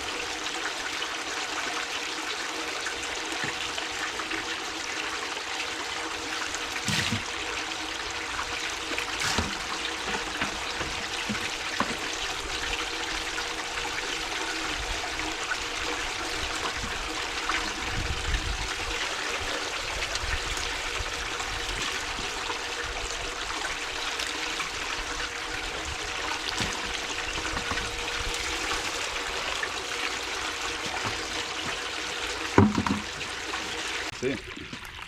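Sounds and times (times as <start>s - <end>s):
water running and splashing: 0.0s - 35.0s.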